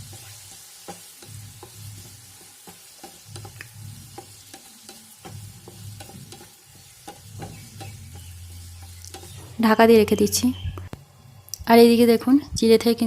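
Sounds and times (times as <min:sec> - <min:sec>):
spatula scraping a pan: 0:00.0 - 0:10.3
potatoes sizzling in oil: 0:00.0 - 0:13.0.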